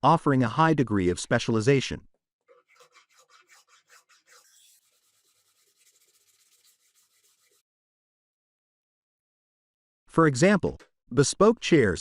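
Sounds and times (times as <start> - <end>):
faint rhythmic rubbing strokes: 2.5 - 7.6.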